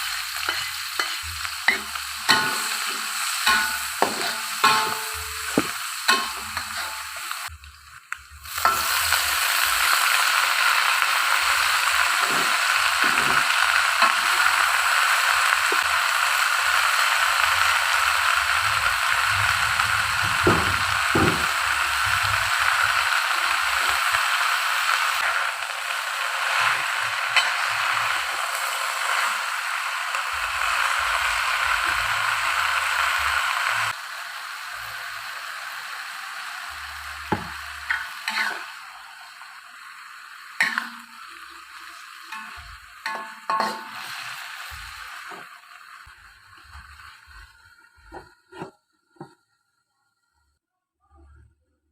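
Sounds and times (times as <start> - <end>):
food sizzling in a frying pan: 0.0 - 49.8
utensil clinking on pan: 3.5 - 7.0.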